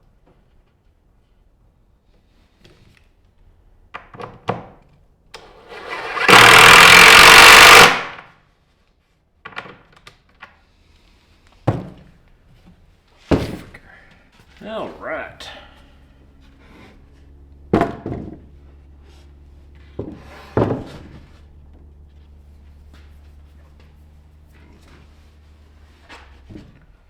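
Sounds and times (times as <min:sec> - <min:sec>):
power tool running: 0:05.4 - 0:08.2.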